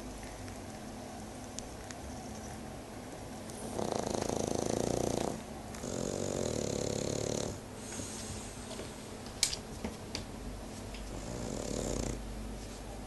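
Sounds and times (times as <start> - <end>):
dog snoring: 3.5 - 7.6, 11.1 - 12.2
dog breathing: 3.5 - 8.8, 11.1 - 12.2.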